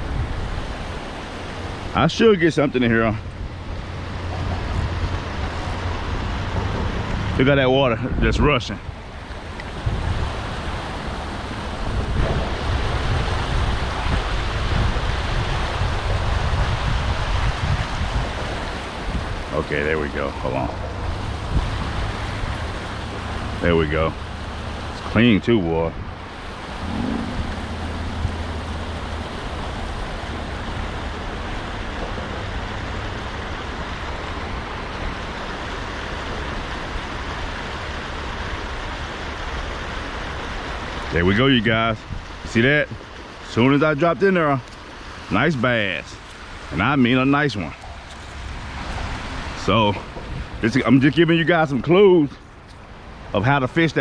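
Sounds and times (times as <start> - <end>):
wind buffeting microphone: 0.0 - 37.4, 38.2 - 51.9
water rushing through spillway: 0.0 - 54.0.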